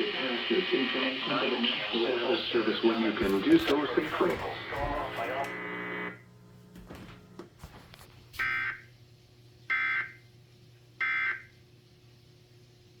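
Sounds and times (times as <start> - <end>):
faint steady hum: 0.0 - 13.0
electronic alarm beeps: 8.4 - 8.8, 9.7 - 10.2, 11.0 - 11.5.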